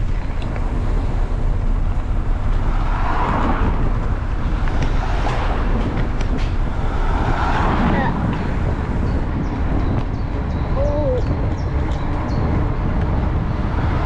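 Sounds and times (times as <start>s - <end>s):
wind rumble on microphone: 0.0s - 14.0s.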